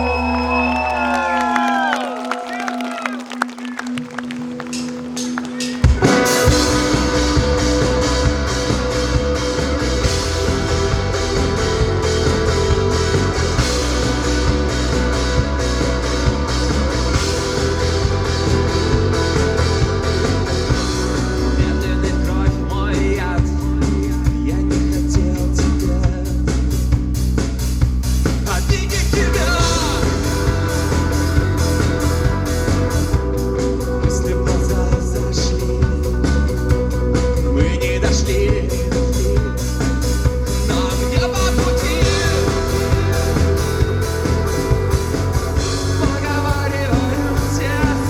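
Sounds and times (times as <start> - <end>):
live rock band playing: 2.4 - 48.0.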